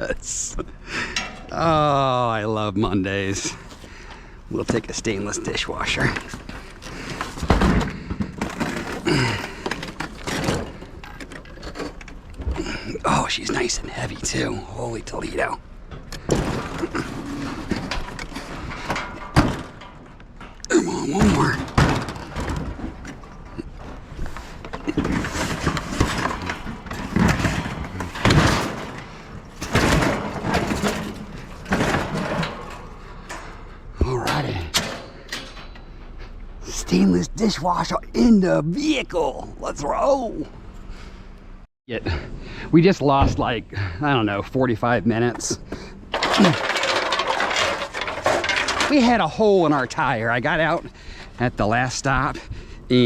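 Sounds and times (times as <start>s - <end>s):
metal appliance scraping and knocking: 16.0s - 35.9s, 46.1s - 50.8s
dishwasher thumping and clunking: 16.2s - 20.1s, 21.2s - 23.2s, 23.9s - 35.7s, 46.1s - 49.1s.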